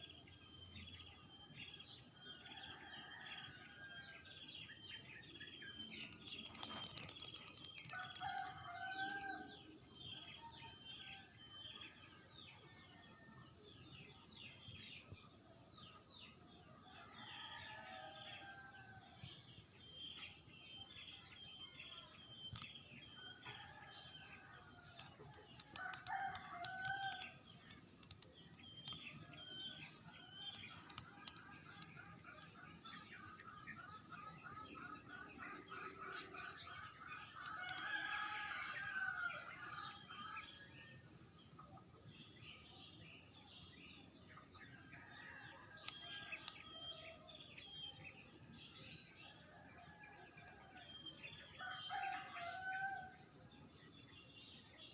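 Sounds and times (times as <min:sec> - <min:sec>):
rooster crowing: 0:07.9 - 0:09.4, 0:25.8 - 0:27.3, 0:37.5 - 0:39.6.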